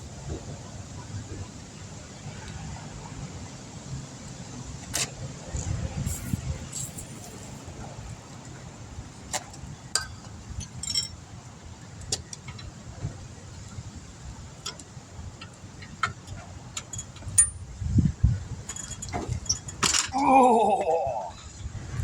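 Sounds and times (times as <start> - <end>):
metal hand tools clinking: 10.0 - 11.2, 16.8 - 17.6.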